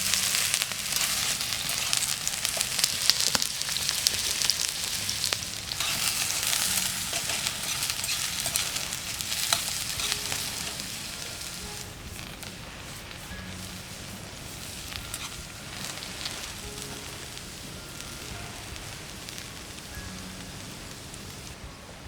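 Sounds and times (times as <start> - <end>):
food sizzling in a pan: 0.0 - 22.0.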